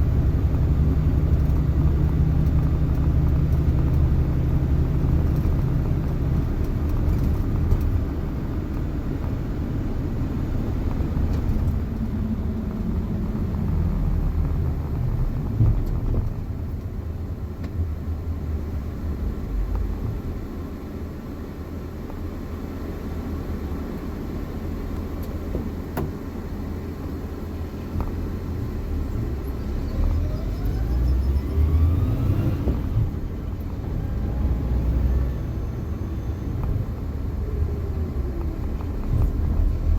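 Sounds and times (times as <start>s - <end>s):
car engine and drivetrain rumble: 0.0s - 39.9s
transmission whine rising in pitch: 29.2s - 33.0s.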